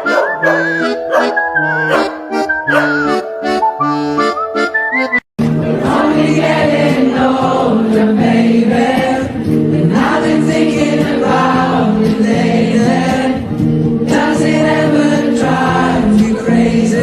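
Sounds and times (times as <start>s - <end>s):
choir singing long notes: 5.4s - 13.5s, 14.1s - 17.0s.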